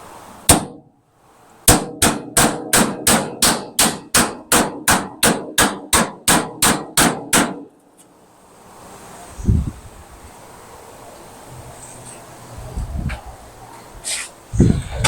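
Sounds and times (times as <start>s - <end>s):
hammer striking steel: 0.5s - 0.8s, 1.7s - 7.7s.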